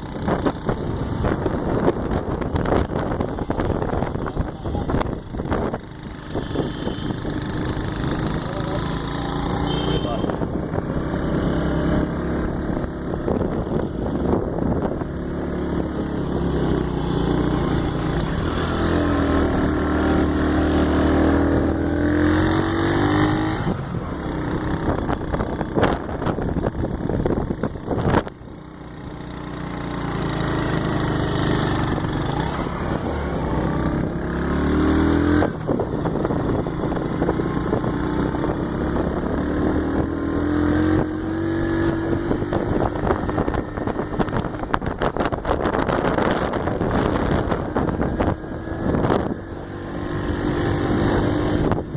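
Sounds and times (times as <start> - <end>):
vehicle engine running: 0.0 - 34.6.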